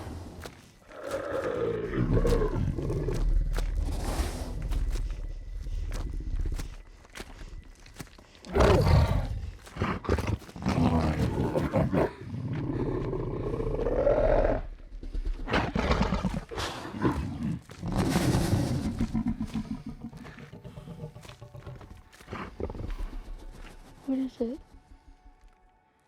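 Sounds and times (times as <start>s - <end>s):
creature roaring and growling: 0.8s - 3.7s, 8.5s - 14.7s.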